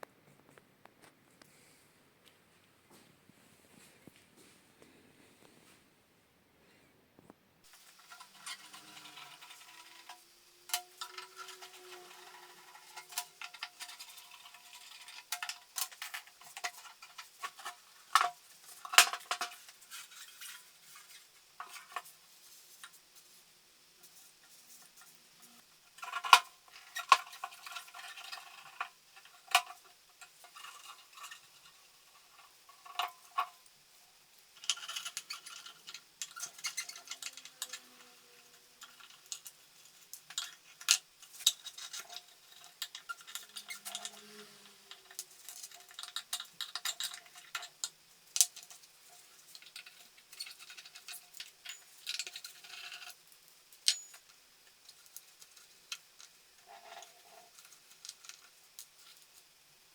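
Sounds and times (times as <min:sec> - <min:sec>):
metal parts clicking and clinking: 0:07.7 - 0:22.1, 0:25.9 - 0:33.6, 0:34.6 - 0:53.2, 0:53.8 - 0:59.2
metal scraping: 0:07.7 - 0:22.1, 0:34.6 - 0:47.6.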